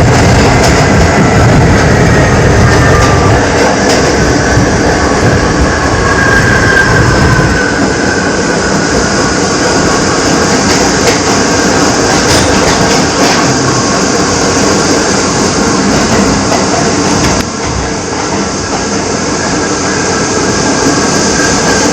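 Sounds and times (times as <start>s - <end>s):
high-pitched train howl: 0.0s - 21.9s
train wheels clacking on rails: 0.0s - 21.9s.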